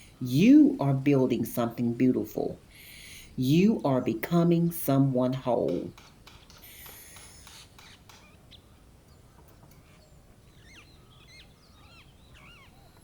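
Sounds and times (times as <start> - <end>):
low outdoor background: 0.0 - 13.0
faint bird chirps: 6.6 - 13.0.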